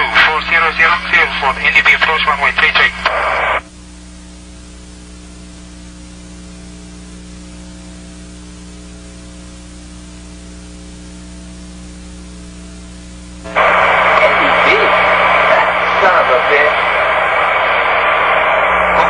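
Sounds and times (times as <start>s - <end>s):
radio voice: 0.0s - 3.6s, 13.5s - 19.0s
constant hiss: 0.0s - 19.0s
electrical hum with fixed tones: 0.0s - 19.0s.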